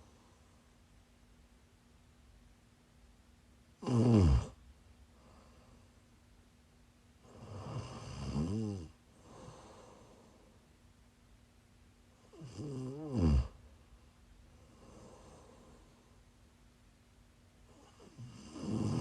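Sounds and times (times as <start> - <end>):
soft breaths: 0.0 - 0.9, 5.0 - 6.2, 8.9 - 10.8, 13.4 - 16.5
woman snoring: 3.8 - 4.6, 7.3 - 9.8, 12.3 - 13.6, 17.7 - 19.0.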